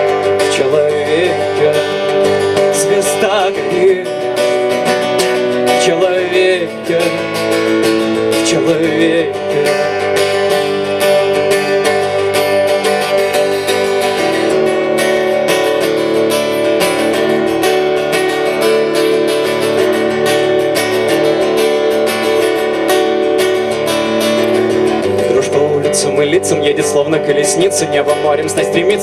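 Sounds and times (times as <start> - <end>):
acoustic guitar strumming: 0.0 - 29.0.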